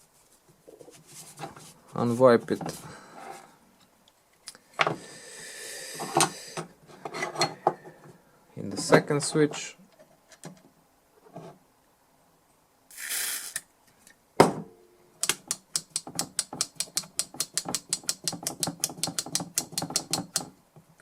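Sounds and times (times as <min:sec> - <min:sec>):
spray can hiss: 0:12.9 - 0:13.7
switch clicking rapidly: 0:15.2 - 0:20.4.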